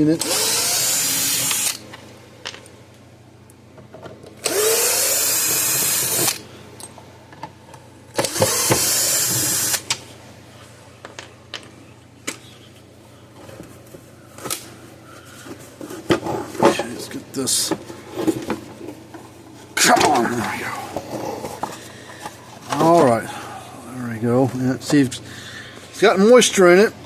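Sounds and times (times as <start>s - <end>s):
cordless drill running: 0.2s - 1.8s, 4.4s - 6.5s, 8.2s - 9.9s.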